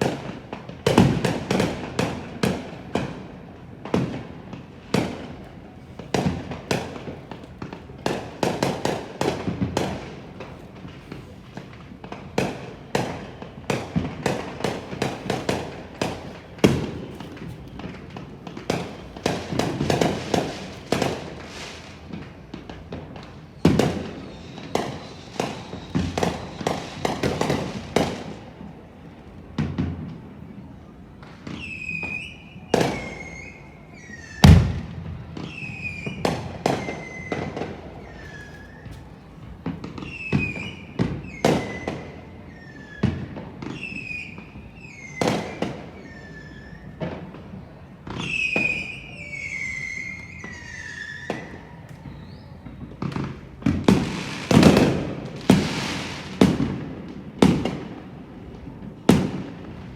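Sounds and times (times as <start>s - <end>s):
fireworks bangs and crackles: 0.0s - 59.9s
high falling whistles: 23.5s - 27.1s, 31.6s - 34.7s, 35.4s - 39.0s, 48.2s - 52.9s
deep firework boom: 34.4s - 35.4s.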